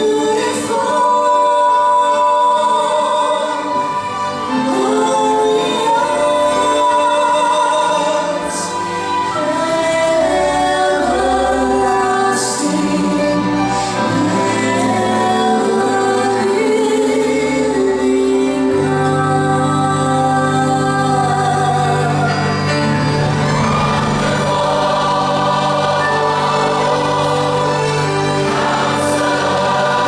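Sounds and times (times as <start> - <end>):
choir singing: 0.0 - 30.0
orchestra playing: 0.0 - 30.0.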